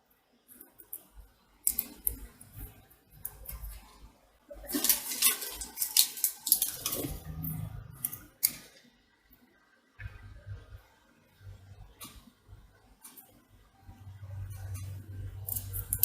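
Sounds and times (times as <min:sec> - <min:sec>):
clattering and rustling: 0:03.4 - 0:08.8.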